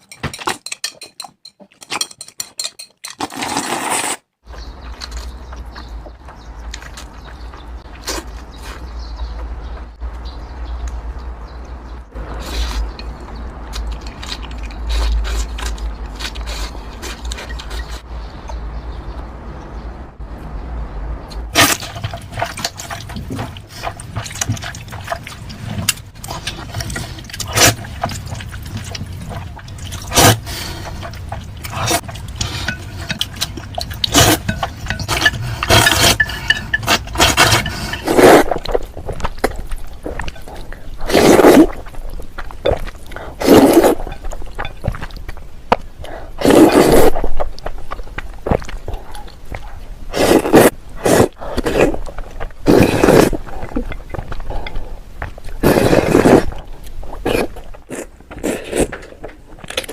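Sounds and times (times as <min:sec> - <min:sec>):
wet mouth clicks and chewing: 0:12.5 - 0:18.6, 0:21.3 - 0:59.9
loud slurps: 0:41.0 - 0:41.8, 0:43.3 - 0:44.0, 0:46.4 - 0:47.3, 0:50.1 - 0:52.0, 0:52.6 - 0:53.5, 0:55.6 - 0:56.6.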